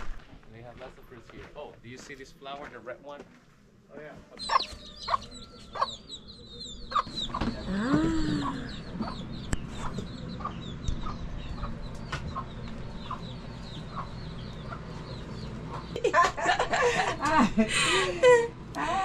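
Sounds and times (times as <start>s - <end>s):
chickens clucking: 4.0s - 19.0s
chicken calls: 4.3s - 19.0s.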